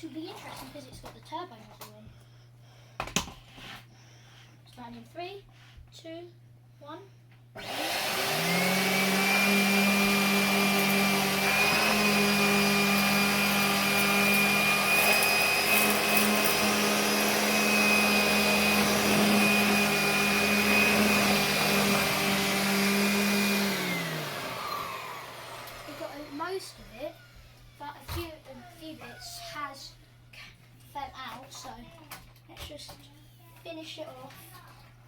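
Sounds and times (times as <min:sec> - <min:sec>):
vacuum cleaner running: 0:07.6 - 0:29.6.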